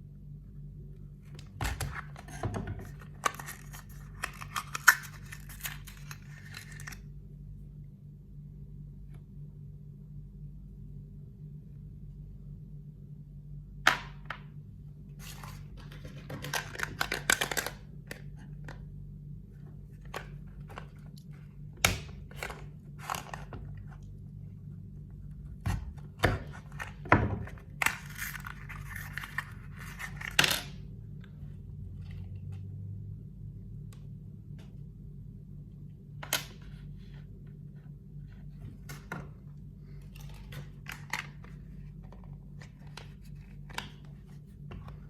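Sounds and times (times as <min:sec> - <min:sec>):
steady low hum: 0:00.0 - 0:45.0
packaging rustling and tearing: 0:01.9 - 0:07.1.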